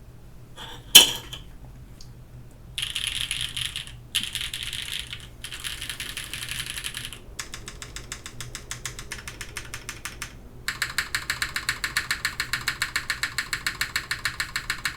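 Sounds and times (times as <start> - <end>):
mechanical keyboard typing: 2.8 - 14.9.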